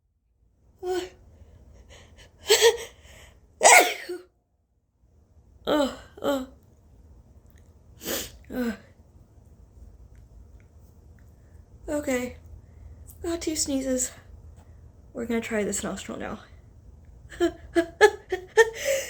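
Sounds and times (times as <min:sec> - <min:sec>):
woman sneezing: 0:03.6 - 0:04.3.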